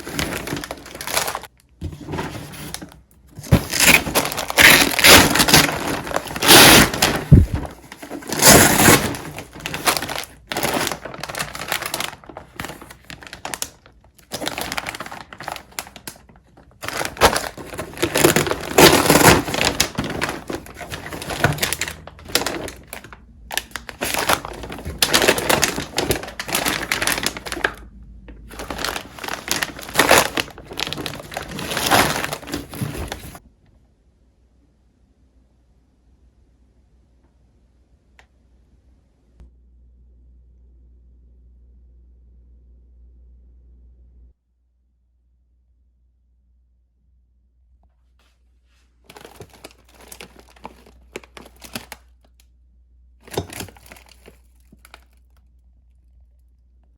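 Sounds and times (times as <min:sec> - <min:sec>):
crunching and crinkling: 0:00.0 - 0:33.4, 0:49.0 - 0:52.4, 0:53.2 - 0:56.6.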